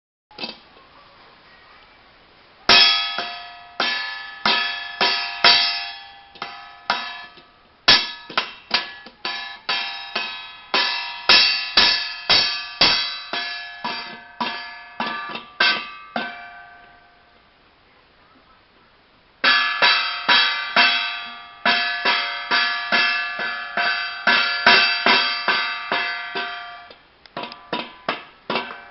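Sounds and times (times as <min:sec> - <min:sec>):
ringing metal object struck: 0:02.7 - 0:17.4, 0:19.4 - 0:26.9.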